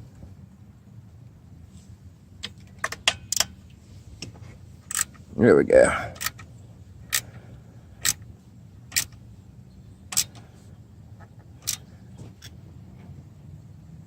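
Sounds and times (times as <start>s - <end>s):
ratchet wrench clicking: 3.0s - 3.6s, 4.9s - 5.2s, 6.2s - 6.5s, 7.1s - 7.3s, 8.0s - 8.3s, 8.9s - 9.2s, 10.1s - 10.4s, 11.6s - 12.5s.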